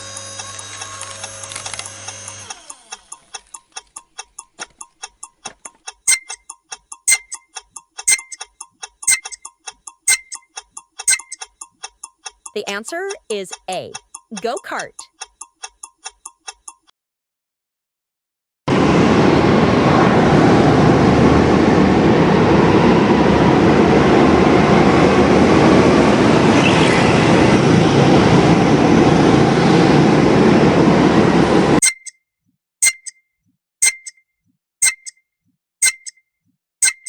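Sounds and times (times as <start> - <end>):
clock-like ticks: 3.1 - 16.9, 32.8 - 33.2, 33.8 - 34.2, 34.8 - 35.2, 35.8 - 36.2.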